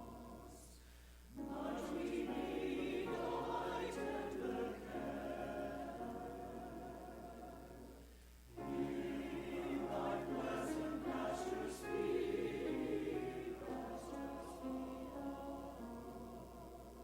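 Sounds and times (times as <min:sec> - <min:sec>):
church choir singing: 0:00.0 - 0:00.8, 0:01.4 - 0:17.0.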